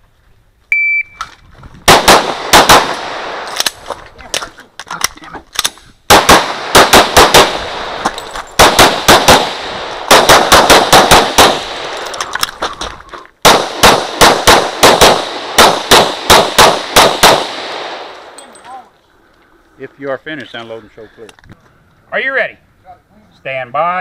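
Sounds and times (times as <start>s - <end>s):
pistol firing rapid shots: 1.9s - 3.3s, 6.1s - 7.8s, 8.6s - 11.8s, 13.4s - 17.9s.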